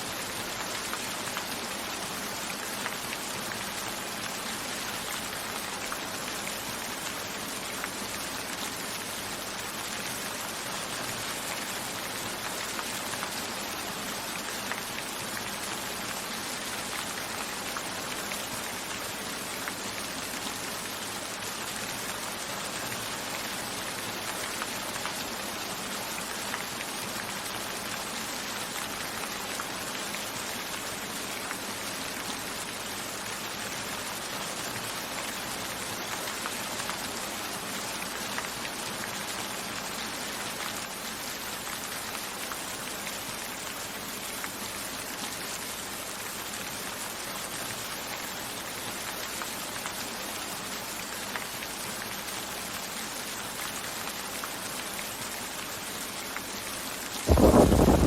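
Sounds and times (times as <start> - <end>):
raindrops ticking on a surface: 0.1 - 58.0
rain hissing: 57.0 - 58.0.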